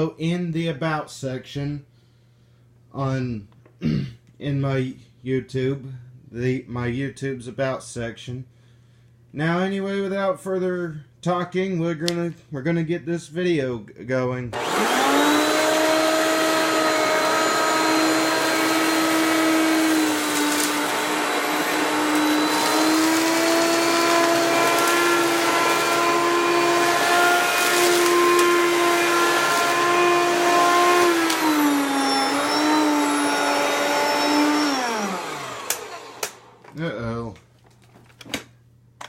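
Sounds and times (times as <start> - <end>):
vacuum cleaner running: 14.6 - 36.8.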